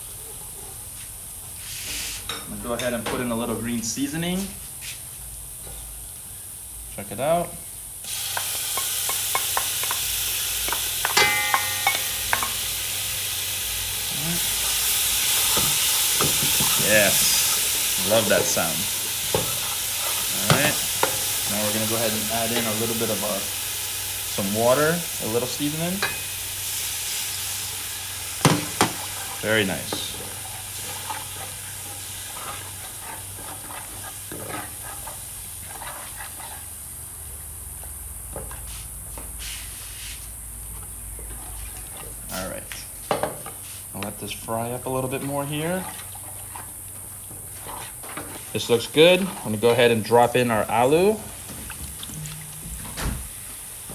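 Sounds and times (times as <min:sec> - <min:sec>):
food sizzling in hot oil: 0:08.0 - 0:42.4, 0:43.4 - 0:53.9
spoon clinking against pot: 0:08.4 - 0:12.8, 0:26.0 - 0:26.4.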